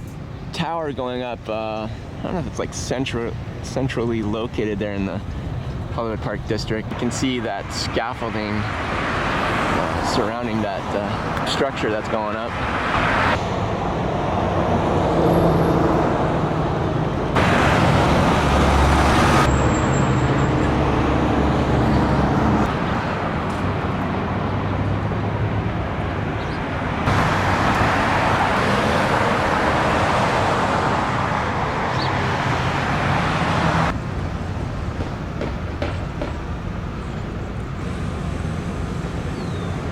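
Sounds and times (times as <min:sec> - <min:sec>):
vehicles passing: 0:00.0 - 0:39.9
engine drone: 0:13.3 - 0:39.9.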